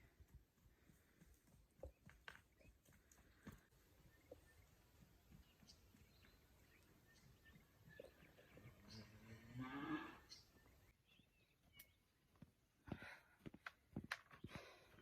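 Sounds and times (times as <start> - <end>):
cow mooing: 8.9 - 10.3.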